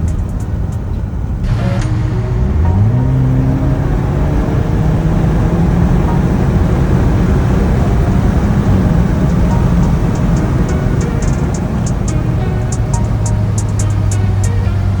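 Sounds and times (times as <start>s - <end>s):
car engine accelerating hard: 0.0s - 15.0s
heavy road noise: 0.0s - 15.0s.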